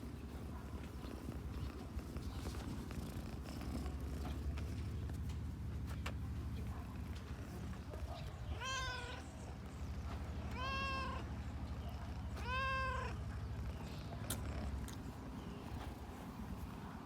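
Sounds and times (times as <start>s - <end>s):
cat meowing: 8.5s - 9.2s, 10.4s - 11.3s, 12.4s - 13.2s.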